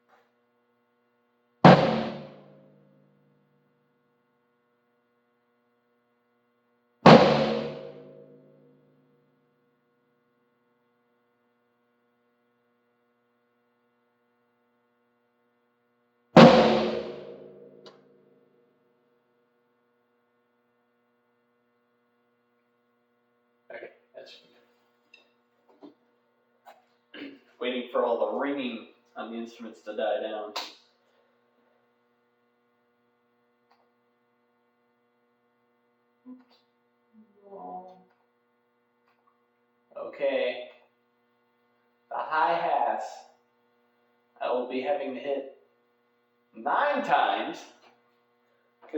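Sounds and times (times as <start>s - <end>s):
faint electrical hum: 0.0s - 48.9s
drum hits: 1.7s - 2.8s, 7.1s - 8.7s, 16.4s - 18.1s.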